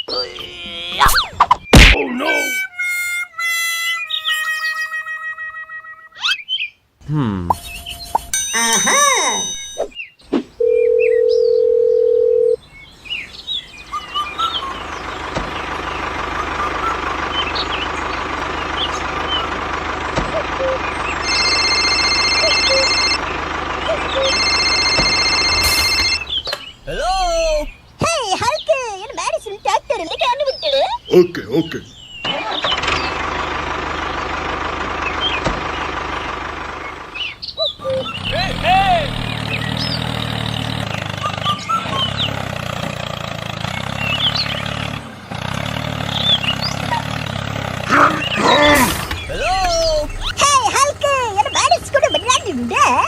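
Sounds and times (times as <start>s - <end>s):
birds chirping: 0.0s - 53.0s
steady electronic beep: 7.5s - 10.0s, 24.1s - 26.3s.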